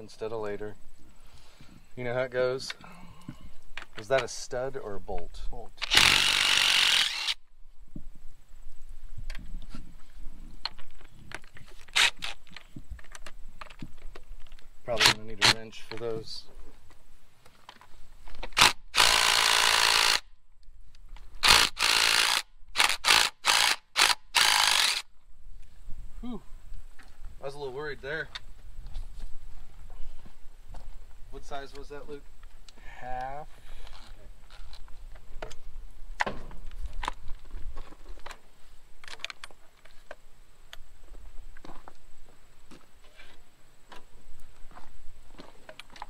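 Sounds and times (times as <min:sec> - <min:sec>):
cordless power tool bursts: 0:05.8 - 0:07.4, 0:11.9 - 0:12.4, 0:18.5 - 0:20.3, 0:21.4 - 0:25.1.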